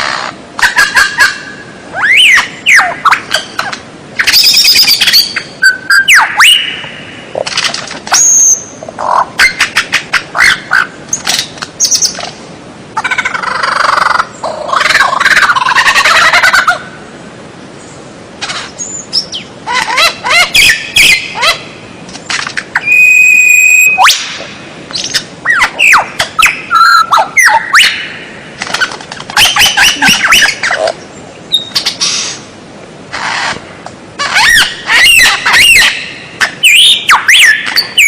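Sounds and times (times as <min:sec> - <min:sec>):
songbird singing varied song: 0:00.7 - 0:07.4, 0:18.7 - 0:22.2, 0:22.8 - 0:28.4, 0:29.4 - 0:32.4, 0:34.4 - 0:38.0.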